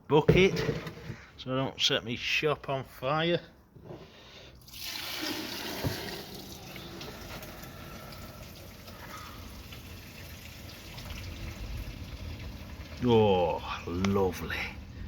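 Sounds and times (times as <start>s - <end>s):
liquid trickling into a bucket: 4.6s - 14.0s.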